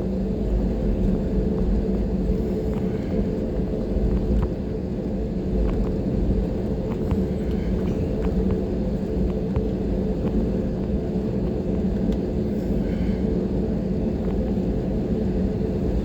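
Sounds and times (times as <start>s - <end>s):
jet engines humming: 0.0s - 16.0s.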